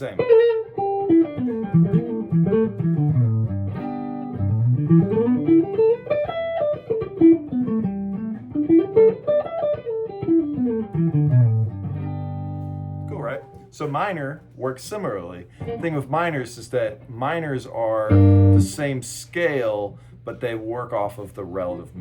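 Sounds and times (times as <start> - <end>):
guitar scale runs: 18.1 - 18.8.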